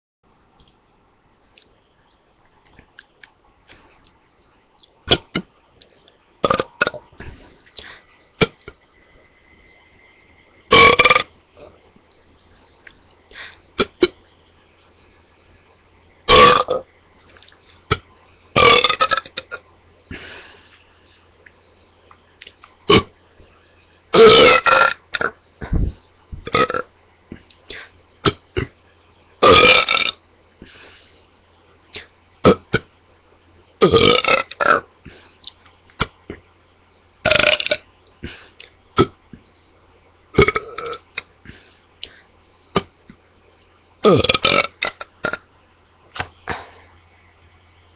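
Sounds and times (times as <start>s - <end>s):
girl burping loudly: 6.4s - 7.0s, 10.7s - 11.3s, 16.3s - 16.8s, 18.6s - 19.5s, 24.2s - 25.4s, 29.4s - 30.2s, 33.8s - 34.9s, 40.4s - 41.0s, 44.0s - 45.4s.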